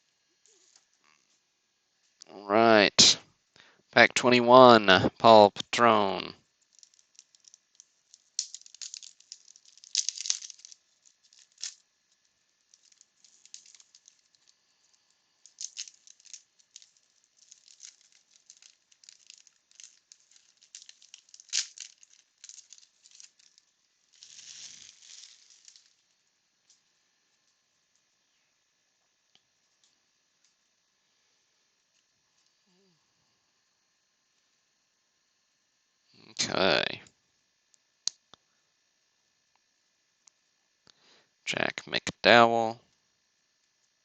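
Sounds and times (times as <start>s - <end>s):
paper wrapper crinkling: 6.6s - 26.2s.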